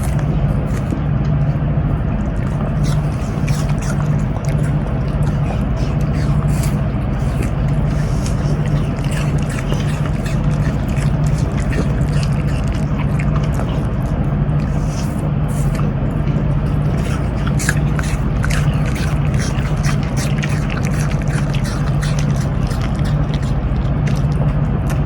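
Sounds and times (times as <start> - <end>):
dog crunching apple: 0.0 - 25.0
steady low hum: 0.0 - 25.0.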